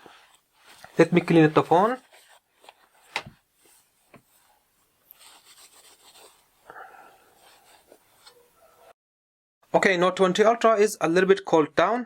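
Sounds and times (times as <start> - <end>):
cloth wiping smartphone: 0.0 - 8.7.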